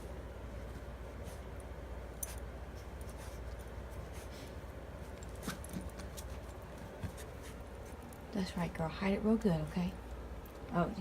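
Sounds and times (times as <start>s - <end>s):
steady low hum: 0.0s - 11.0s
faint clicks and rustles: 0.4s - 8.5s.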